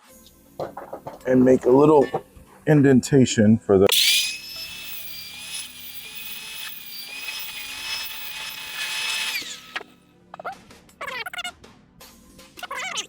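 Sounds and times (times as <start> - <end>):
power cutter whining through metal: 3.9 - 10.0.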